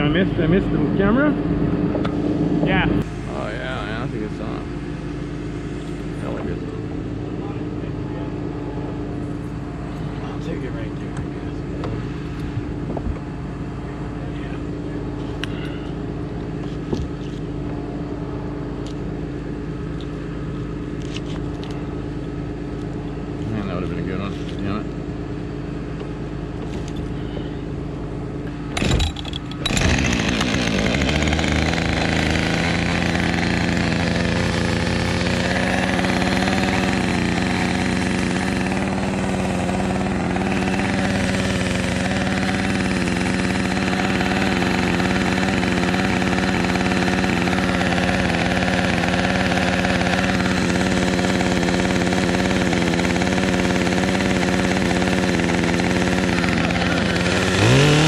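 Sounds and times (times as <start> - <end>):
engine running: 0.0 - 58.0.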